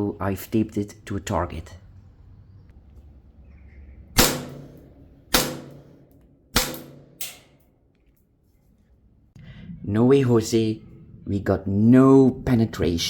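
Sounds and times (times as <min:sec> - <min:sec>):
airsoft pistol shots: 0:04.2 - 0:07.6.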